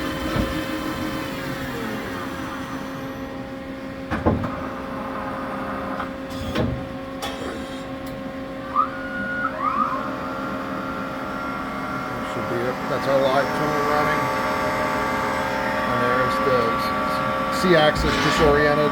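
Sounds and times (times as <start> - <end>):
tool spinning up whine: 0.0 - 3.5, 9.0 - 18.9
machine hum: 7.0 - 18.9
machine clunks: 17.9 - 18.9.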